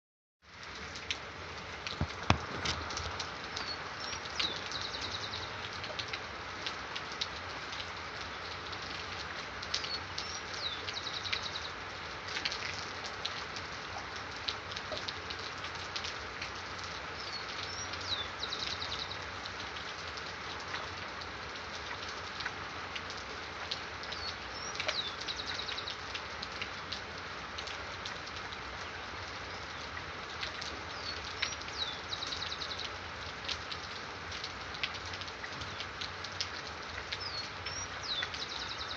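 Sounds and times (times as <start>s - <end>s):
steady rain with drop ticks: 0.4s - 38.9s
songbird singing: 2.1s - 5.6s, 9.8s - 11.8s, 17.2s - 19.3s, 24.1s - 26.1s, 30.9s - 32.9s, 37.1s - 38.9s.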